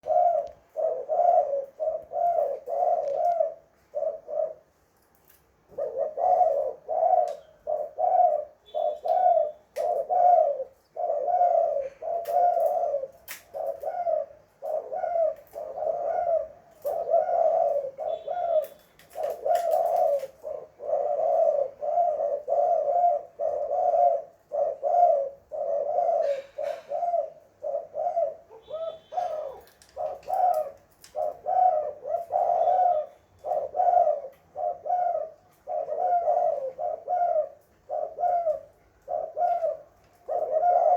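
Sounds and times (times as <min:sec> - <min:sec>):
dove cooing: 0:00.0 - 0:04.8, 0:05.6 - 0:40.9
faint clicks: 0:29.5 - 0:31.4.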